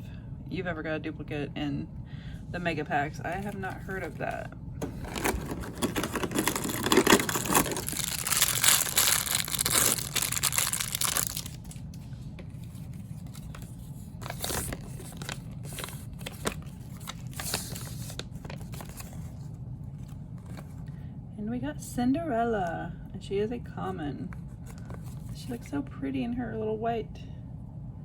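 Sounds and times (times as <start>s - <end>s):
plastic bag tearing and crinkling: 4.8s - 11.9s, 13.2s - 19.2s
rustles and clicks of handling: 24.3s - 25.8s.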